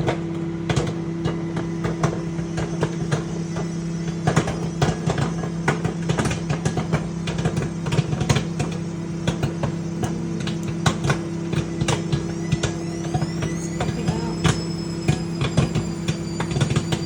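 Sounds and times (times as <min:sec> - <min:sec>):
microwave oven humming: 0:00.0 - 0:17.0
popcorn popping: 0:00.0 - 0:17.0.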